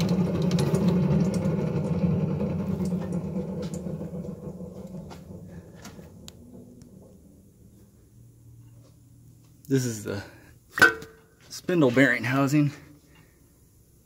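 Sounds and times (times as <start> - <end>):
motor rough rumble: 0.0 - 9.5.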